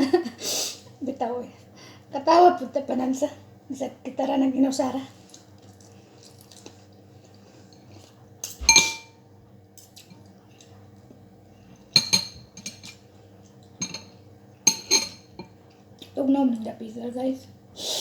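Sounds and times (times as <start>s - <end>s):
cutlery clinking against dishes: 8.4s - 9.2s, 11.9s - 13.0s, 13.8s - 15.6s.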